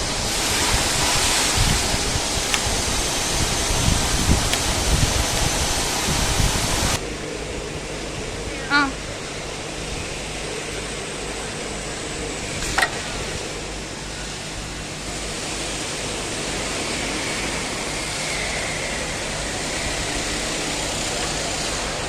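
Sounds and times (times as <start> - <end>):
sharp click: 2.5 - 3.3, 4.4 - 5.6.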